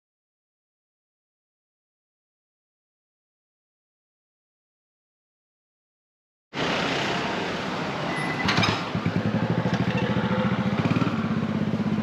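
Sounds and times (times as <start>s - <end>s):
street traffic: 6.6s - 12.0s
motorcycle engine running: 8.6s - 12.0s.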